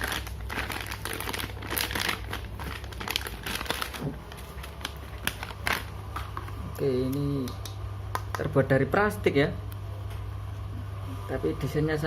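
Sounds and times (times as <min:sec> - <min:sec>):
plastic packaging crinkling: 0:00.0 - 0:06.8.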